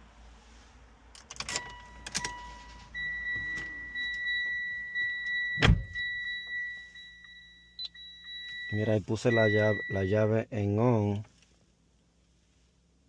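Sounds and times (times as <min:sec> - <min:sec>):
heavy thump: 0:05.6 - 0:06.0.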